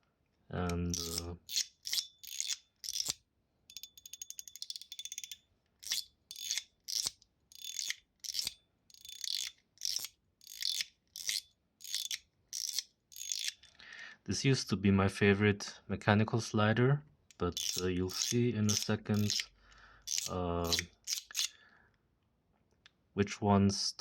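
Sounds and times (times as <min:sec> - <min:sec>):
fidget slider clicking: 0:00.7 - 0:13.6, 0:17.4 - 0:19.5, 0:20.1 - 0:21.5.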